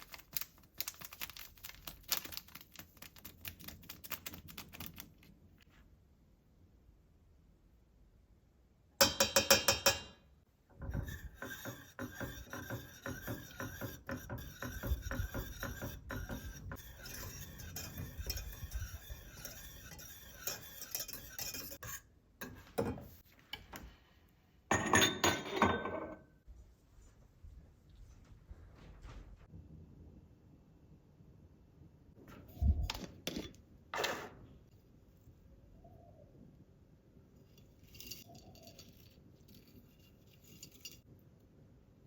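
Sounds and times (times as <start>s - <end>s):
utensil scraping in a pan: 10.7s - 23.7s.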